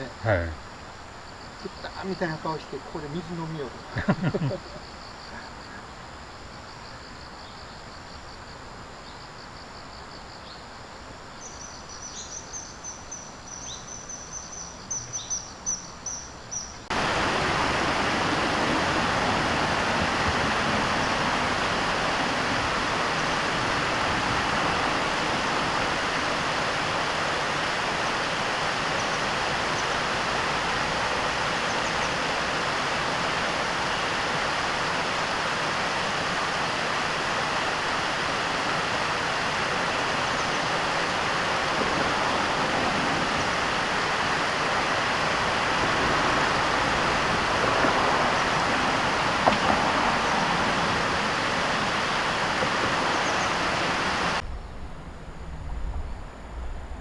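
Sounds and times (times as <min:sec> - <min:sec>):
bird chirping: 0:11.3 - 0:16.9
river water rushing: 0:16.9 - 0:54.4.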